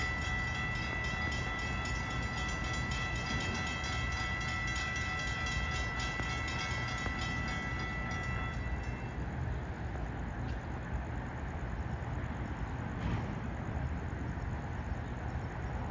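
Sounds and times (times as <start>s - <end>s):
passenger train rumbling past: 0.0s - 15.9s.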